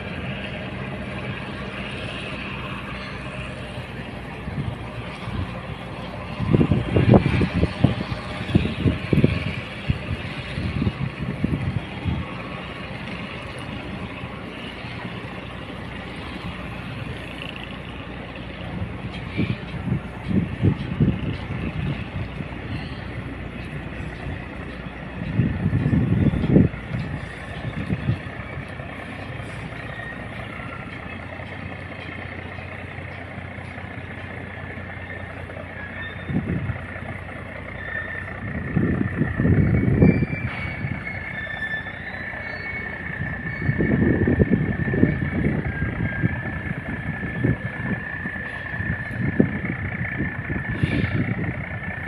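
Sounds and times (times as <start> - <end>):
wind buffeting microphone: 0.0 - 42.1, 42.8 - 52.0
diesel engine droning: 0.0 - 52.0.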